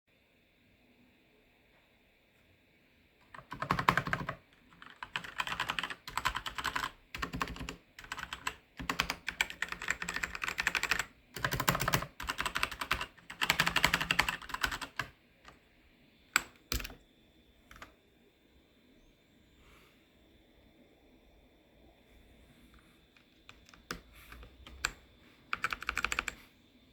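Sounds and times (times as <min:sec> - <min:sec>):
mechanical keyboard typing: 0:03.2 - 0:15.6, 0:16.4 - 0:17.0, 0:17.7 - 0:17.9, 0:23.2 - 0:26.4.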